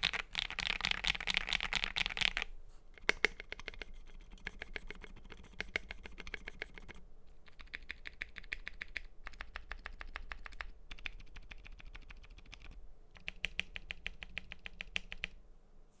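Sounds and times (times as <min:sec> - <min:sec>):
mechanical keyboard typing: 0:00.0 - 0:15.4.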